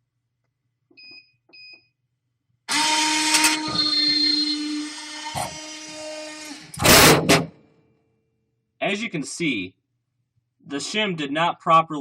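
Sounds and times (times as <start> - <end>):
vend motor whirring: 2.7 - 6.8.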